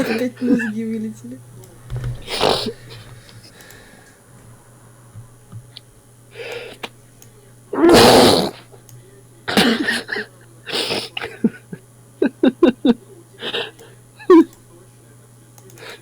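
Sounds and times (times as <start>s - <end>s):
man sneezing loudly: 7.8s - 8.6s, 9.5s - 11.5s.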